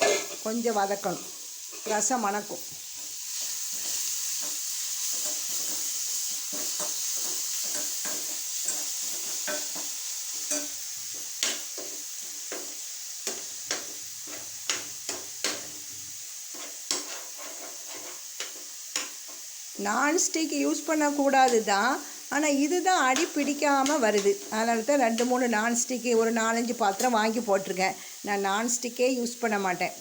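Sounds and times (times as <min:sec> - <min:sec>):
paste sizzling in hot oil: 0:00.0 - 0:30.0
spatula tapping and scraping pan: 0:03.0 - 0:15.8, 0:16.5 - 0:19.5, 0:23.0 - 0:25.4.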